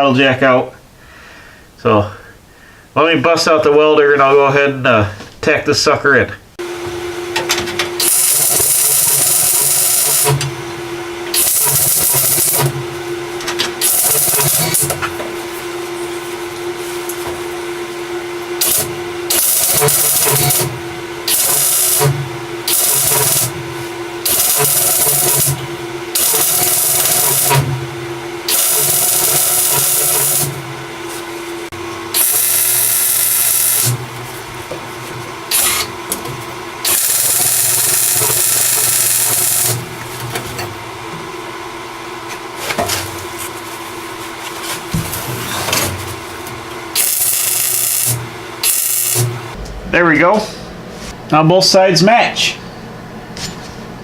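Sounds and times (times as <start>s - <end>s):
steady hum: 4.7s - 54.0s
crackling hiss of welding: 8.0s - 10.4s, 11.3s - 12.7s, 13.8s - 14.9s, 18.6s - 20.7s, 21.3s - 23.5s, 24.2s - 25.6s, 26.2s - 27.7s, 28.4s - 30.6s, 32.2s - 34.0s, 36.8s - 39.8s, 46.9s - 49.3s.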